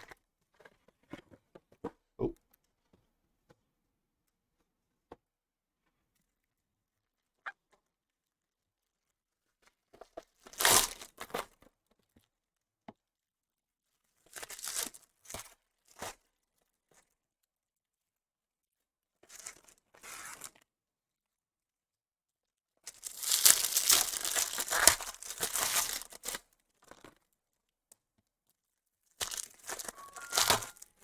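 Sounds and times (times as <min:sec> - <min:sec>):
card wrappers tearing and crinkling: 0:22.9 - 0:26.4, 0:29.2 - 0:30.8.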